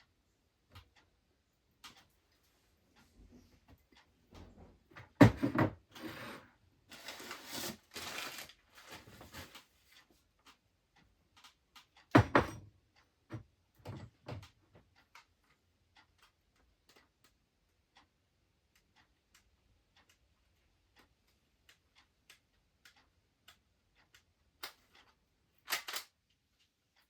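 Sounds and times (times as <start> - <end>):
rustling or scraping: 5.9 - 10.0
small clicks: 18.7 - 27.0.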